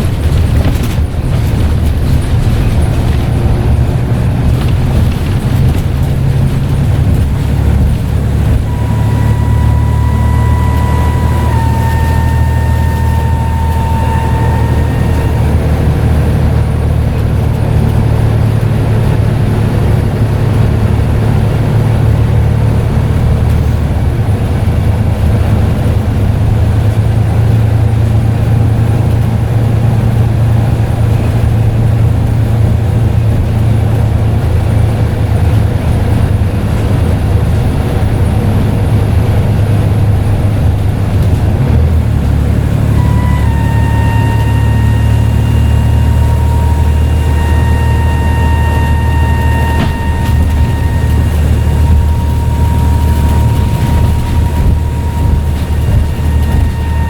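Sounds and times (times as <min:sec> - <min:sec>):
bus engine droning: 0:00.0 - 0:57.0
turbo whistle: 0:07.1 - 0:17.2, 0:42.0 - 0:57.0.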